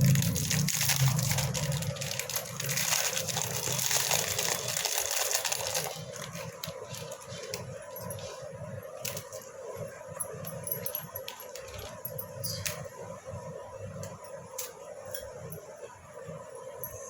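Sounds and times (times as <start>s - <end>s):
biscuit pieces clicking and rustling: 0.1s - 7.7s.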